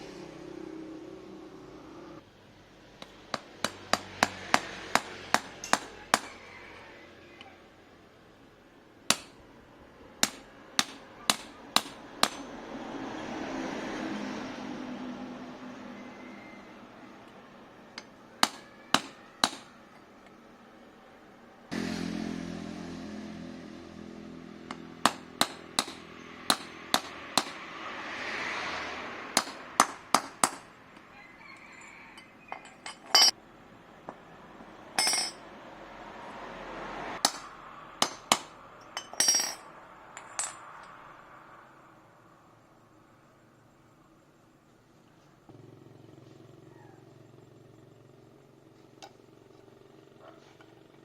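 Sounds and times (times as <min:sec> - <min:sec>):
hand tools tapping on metal: 0:03.0 - 0:06.4, 0:09.1 - 0:09.4, 0:10.2 - 0:12.6, 0:17.2 - 0:20.4, 0:24.7 - 0:27.6, 0:29.4 - 0:31.1, 0:32.2 - 0:33.4, 0:35.0 - 0:35.4, 0:37.2 - 0:39.6.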